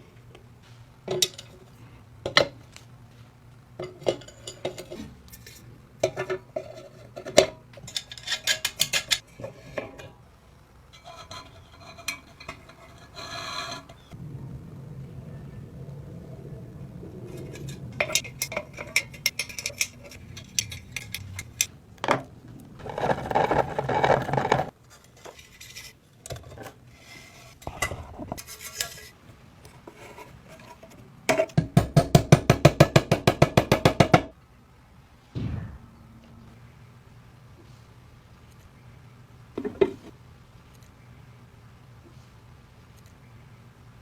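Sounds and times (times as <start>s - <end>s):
tool scraping: 11.0s - 14.2s.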